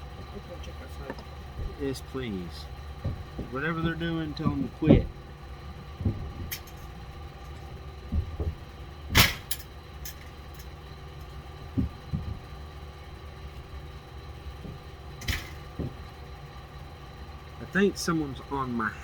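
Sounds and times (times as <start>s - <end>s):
steady low hum: 0.0s - 19.0s
knocks and thumps: 1.0s - 1.9s, 2.9s - 9.6s, 11.6s - 16.3s.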